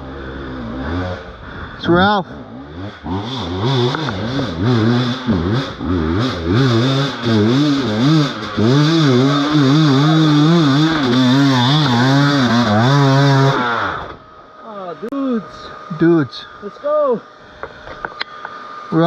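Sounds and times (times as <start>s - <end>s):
dirt bike engine revving and idling: 0.0s - 19.0s.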